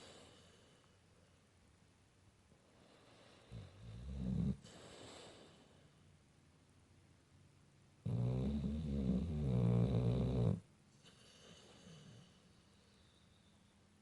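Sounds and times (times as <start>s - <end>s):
dog breathing quietly: 0.0s - 1.4s, 2.6s - 6.1s, 11.0s - 13.8s
dog snoring: 2.8s - 5.9s, 8.0s - 13.1s.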